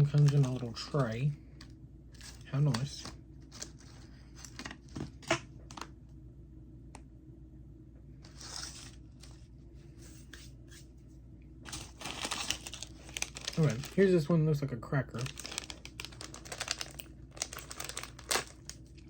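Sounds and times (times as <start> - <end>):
packaging tearing: 0.0 - 1.1, 8.3 - 9.2, 11.7 - 14.1, 15.2 - 18.9
plastic crinkling: 0.0 - 1.3, 2.2 - 5.9, 11.7 - 14.3, 15.1 - 19.0
plastic packaging rustling: 0.0 - 1.3, 2.2 - 5.9, 8.2 - 9.5, 11.7 - 14.3, 15.1 - 19.0.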